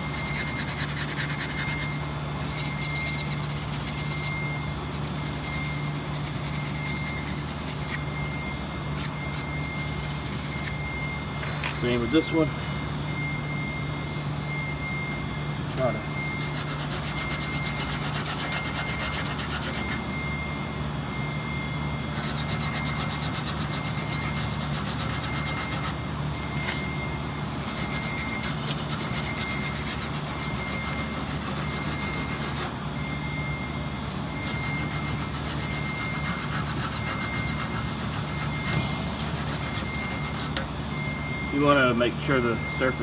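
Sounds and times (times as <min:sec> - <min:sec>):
wire brush scrubbing cable: 0:00.0 - 0:08.0, 0:27.6 - 0:32.7.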